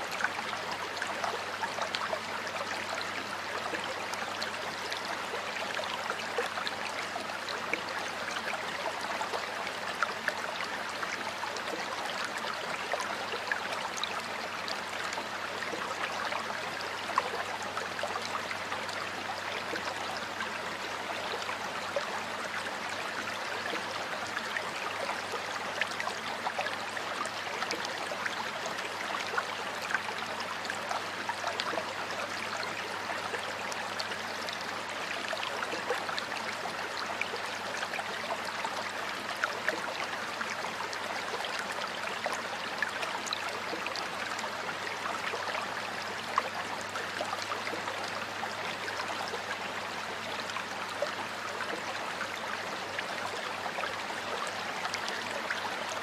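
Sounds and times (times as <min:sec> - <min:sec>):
stream flowing over rocks: 0:00.0 - 0:56.0.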